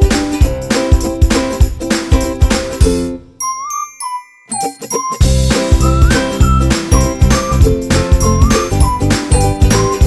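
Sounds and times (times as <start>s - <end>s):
upbeat music with steady beat: 0.0s - 10.0s
bright chiming jingle: 3.4s - 10.0s.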